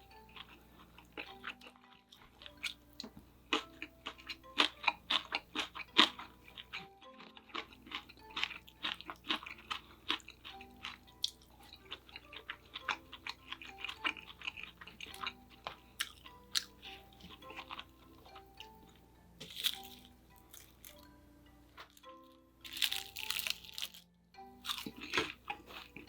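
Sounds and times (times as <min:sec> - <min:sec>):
chewing and crunching food: 0:00.0 - 0:21.1, 0:21.8 - 0:26.0
soft background music: 0:00.0 - 0:26.0.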